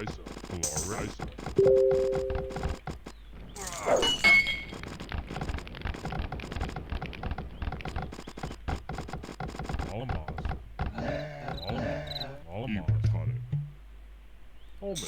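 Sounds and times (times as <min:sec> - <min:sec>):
rapid clicks and taps: 0:00.0 - 0:03.4, 0:04.7 - 0:11.8.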